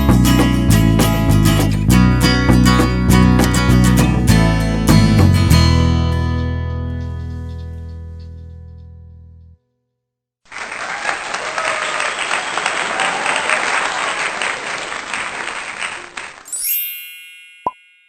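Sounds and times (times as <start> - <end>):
strummed guitar chord: 0.0 - 8.3
crowd applause: 10.5 - 16.5
bright rising chime: 16.5 - 18.0.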